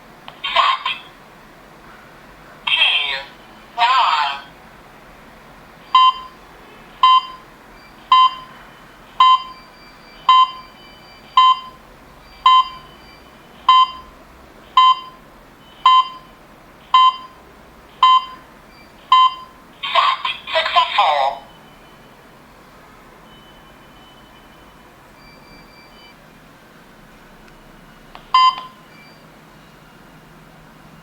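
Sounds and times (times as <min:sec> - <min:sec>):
short electronic beeps: 0:05.9 - 0:06.4, 0:07.0 - 0:08.5, 0:09.2 - 0:14.1, 0:14.8 - 0:16.3, 0:17.0 - 0:17.4, 0:18.0 - 0:20.9, 0:23.2 - 0:26.2, 0:28.3 - 0:29.3.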